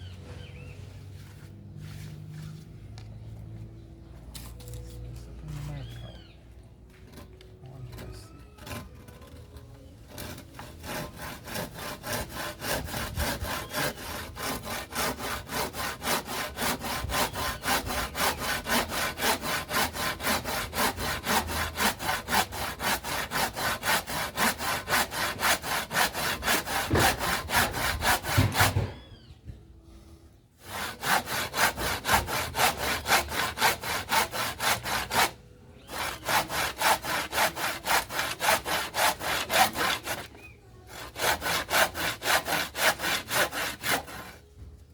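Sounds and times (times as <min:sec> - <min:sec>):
hand saw cutting wood: 0:06.9 - 0:29.0, 0:30.6 - 0:44.4.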